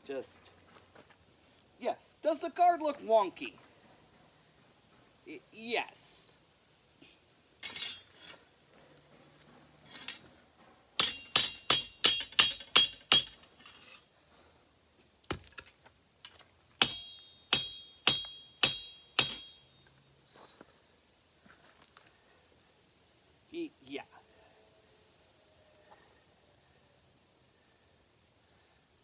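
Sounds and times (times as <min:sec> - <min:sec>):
hammer tapping on steel: 0:11.0 - 0:13.6, 0:16.3 - 0:19.9.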